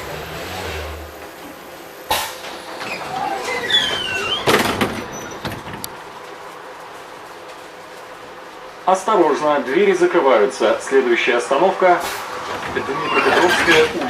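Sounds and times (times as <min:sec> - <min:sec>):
tram low hum: 0:00.0 - 0:14.0
brief squeals: 0:02.8 - 0:05.4, 0:12.8 - 0:14.0.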